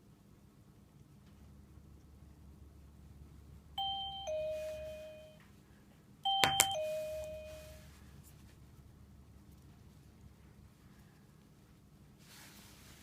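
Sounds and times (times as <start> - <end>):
two-note ding-dong chime: 3.8 - 5.4, 6.3 - 7.8.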